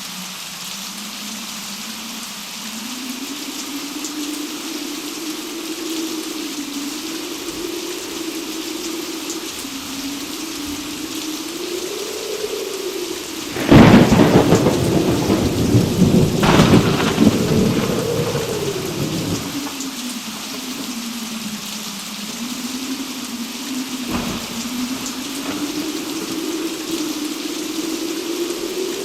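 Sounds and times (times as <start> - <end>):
heavy rain: 0.0 - 29.0
thunder cracks and rumbling: 13.1 - 21.6, 23.3 - 29.0.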